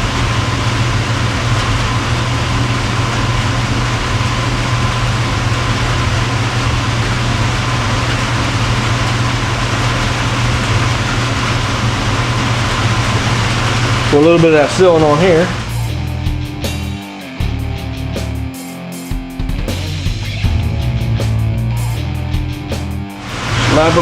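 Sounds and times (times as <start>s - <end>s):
machine hum with hiss: 0.0s - 24.0s.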